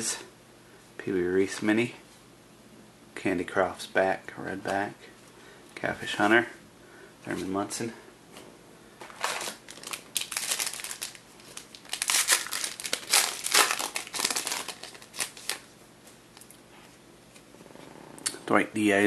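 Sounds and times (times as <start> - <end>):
wrapper crinkling and rustling: 9.0 - 15.7.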